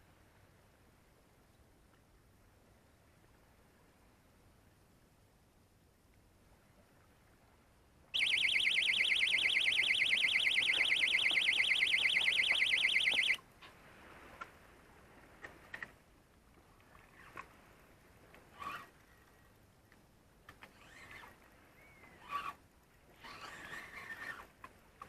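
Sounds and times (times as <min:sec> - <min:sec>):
electronic alarm buzzing: 0:08.2 - 0:13.4.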